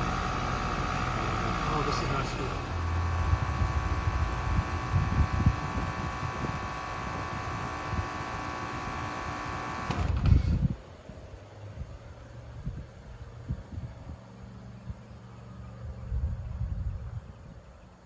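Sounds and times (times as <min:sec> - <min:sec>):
heat pump humming: 0:00.0 - 0:11.0
fan spinning down: 0:00.0 - 0:17.4.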